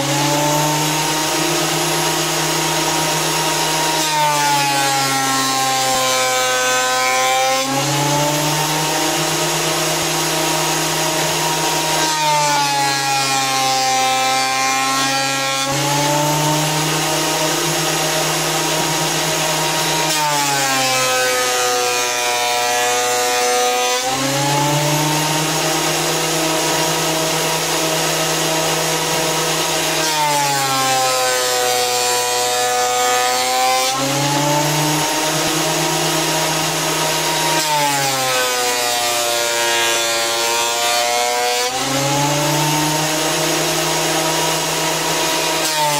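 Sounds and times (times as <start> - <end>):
electric planer cutting wood: 0.0 - 45.9.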